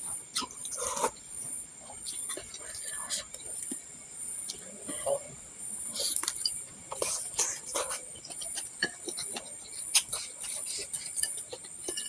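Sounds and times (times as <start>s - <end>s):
person chewing with mouth smacks: 6.0s - 12.0s.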